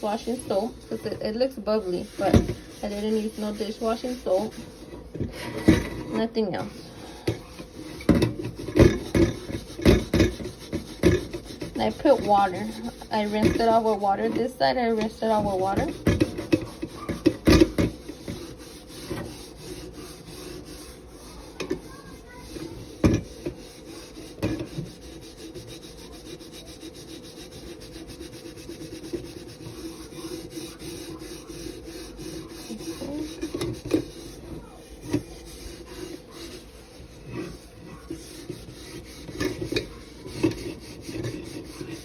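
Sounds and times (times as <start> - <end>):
soap pad scrubbing kettle: 0.0 - 42.0
kettle knocking: 2.0 - 2.8, 6.6 - 19.2.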